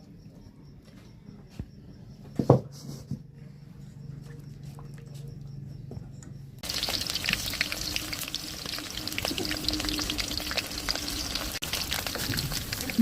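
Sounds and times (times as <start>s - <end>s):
food sizzling in hot oil: 6.6s - 13.0s.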